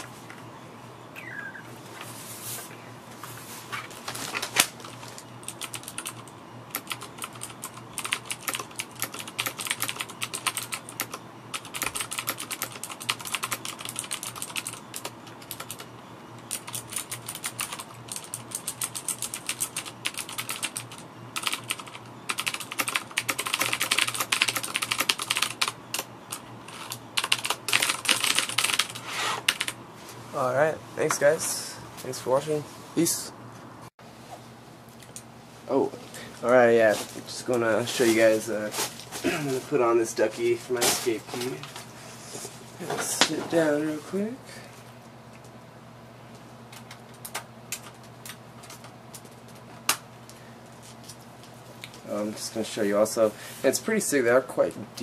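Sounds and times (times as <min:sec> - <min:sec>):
mechanical keyboard clicking: 0:05.5 - 0:15.8, 0:16.5 - 0:26.1.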